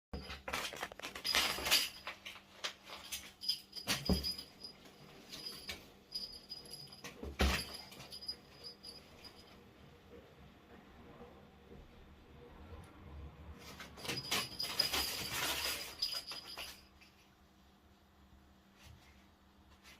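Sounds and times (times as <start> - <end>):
paper rustling and skittering: 0.3 - 1.8.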